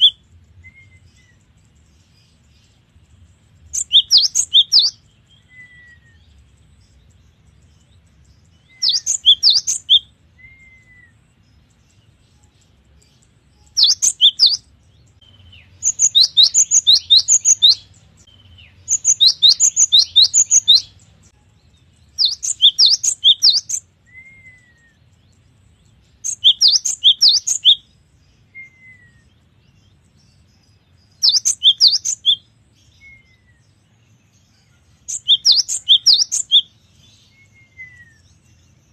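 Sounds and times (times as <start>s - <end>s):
bird singing sharp high notes: 15.4s - 21.0s.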